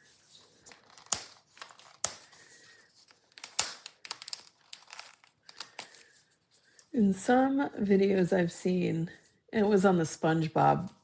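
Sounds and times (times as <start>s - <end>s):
plastic crinkling: 0.3s - 6.7s.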